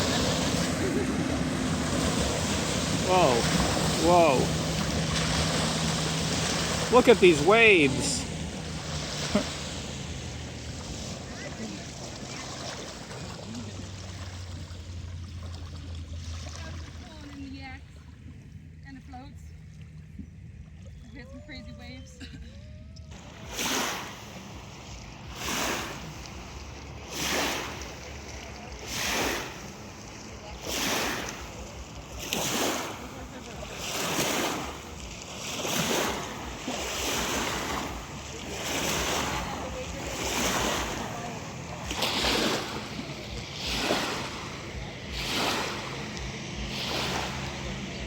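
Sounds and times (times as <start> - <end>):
steady low rumble: 0.0 - 7.0, 36.3 - 48.0
small waves splashing on shore: 0.0 - 19.0, 23.1 - 48.0.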